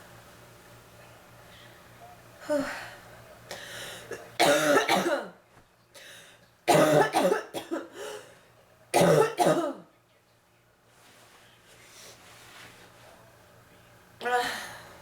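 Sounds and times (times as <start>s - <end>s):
woman coughing: 4.4s - 5.4s, 6.7s - 8.0s, 9.0s - 9.9s.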